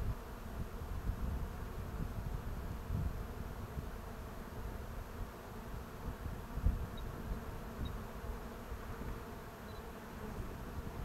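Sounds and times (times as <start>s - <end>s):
bees buzzing: 3.3s - 11.0s.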